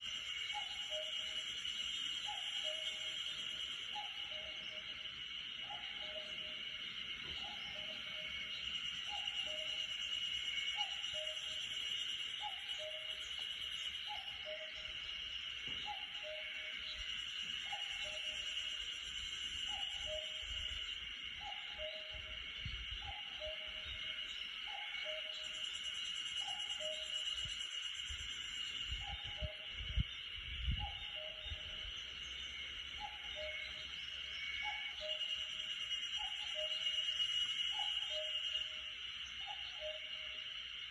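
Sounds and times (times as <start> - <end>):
cuckoo calling: 0.5 - 1.4, 2.2 - 5.0, 5.6 - 6.6, 7.2 - 11.8, 12.4 - 17.0, 17.6 - 18.6, 19.7 - 20.6, 21.4 - 22.3, 30.7 - 31.8, 33.0 - 33.9, 34.6 - 38.8, 39.4 - 40.3.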